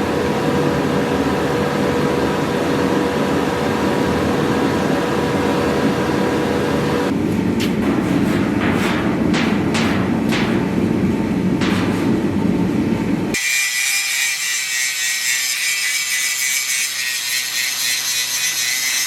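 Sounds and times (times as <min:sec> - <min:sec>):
constant hum: 0:00.0 - 0:13.4
forge blower rushing: 0:00.0 - 0:14.1.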